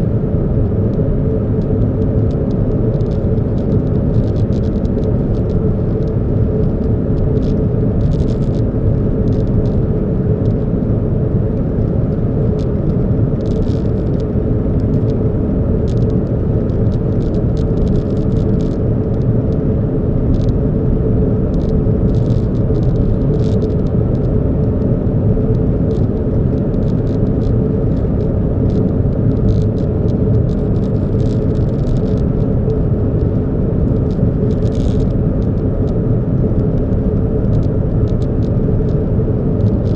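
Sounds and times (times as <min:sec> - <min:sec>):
car engine and road rumble: 0:00.0 - 0:39.9
light clicks and ticks: 0:13.4 - 0:14.2, 0:15.9 - 0:18.9, 0:21.5 - 0:24.0, 0:28.7 - 0:32.2, 0:34.0 - 0:35.1.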